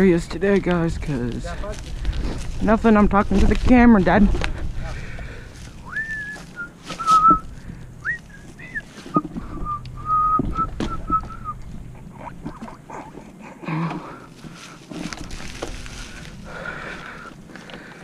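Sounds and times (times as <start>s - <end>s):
person whistling: 5.9s - 11.6s.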